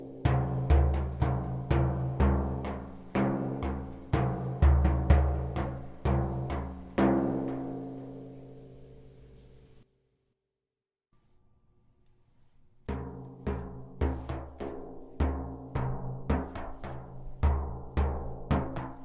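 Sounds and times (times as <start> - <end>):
deep ringing drum notes: 0.0 - 7.8.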